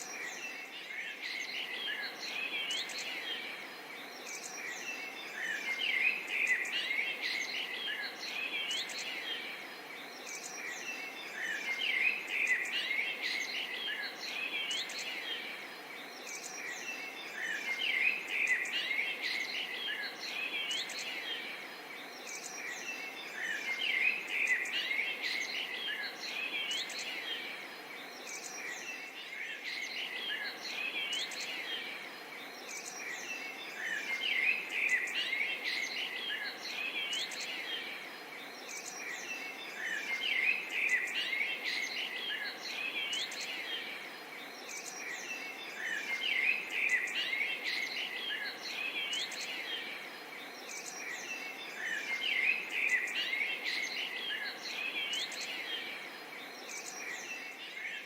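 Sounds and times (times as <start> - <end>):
birds chirping and singing: 0.0 - 58.0
forest ambience hiss: 0.0 - 58.0.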